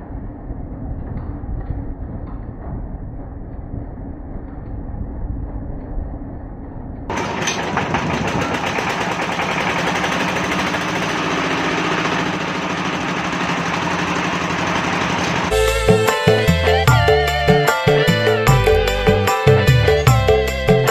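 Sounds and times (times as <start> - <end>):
diesel engine knocking: 7.1 - 17.0
music: 15.5 - 20.9.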